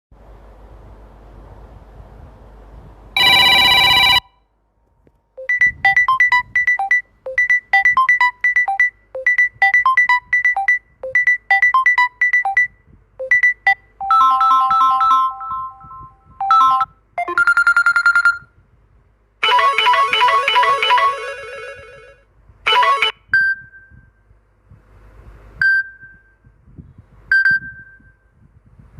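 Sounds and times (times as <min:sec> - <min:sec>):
buzzy phone tone: 0:03.2 - 0:04.3, 0:05.4 - 0:18.4, 0:19.4 - 0:23.6
high electronic ringtone notes: 0:03.2 - 0:04.3, 0:05.4 - 0:18.5, 0:19.4 - 0:23.6
phone ringtones: 0:03.2 - 0:04.4, 0:05.4 - 0:18.5, 0:19.4 - 0:23.7.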